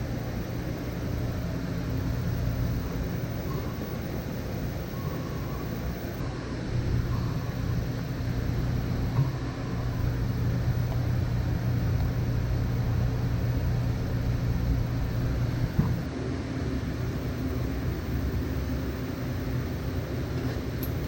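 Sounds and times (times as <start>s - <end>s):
motor humming: 0.0s - 16.1s.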